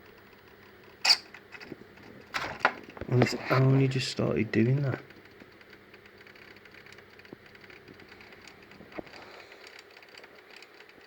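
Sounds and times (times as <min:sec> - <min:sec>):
faint rapid irregular ticking: 0:03.7 - 0:11.0.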